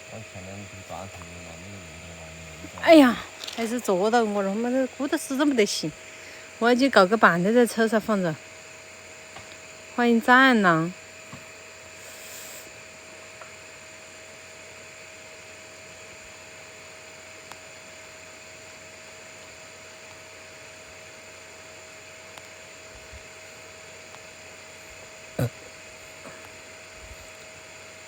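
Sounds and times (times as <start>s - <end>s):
background hiss: 0.0s - 13.5s
faint hum tone: 0.0s - 16.0s.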